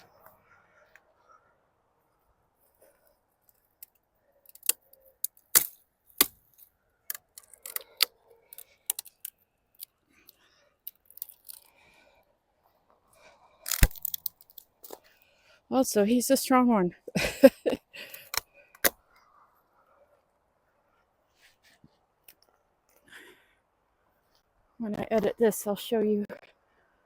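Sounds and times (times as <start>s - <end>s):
dry twigs cracking and snapping: 3.4s - 11.8s, 13.6s - 15.1s.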